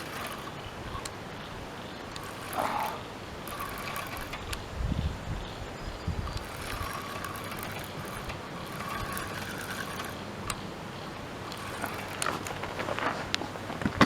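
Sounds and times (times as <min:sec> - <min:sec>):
fishing reel clicks: 0:00.0 - 0:01.2, 0:02.0 - 0:04.7, 0:06.2 - 0:12.5
fishing reel whirring: 0:00.0 - 0:13.4
wind rumble on microphone: 0:04.4 - 0:07.2.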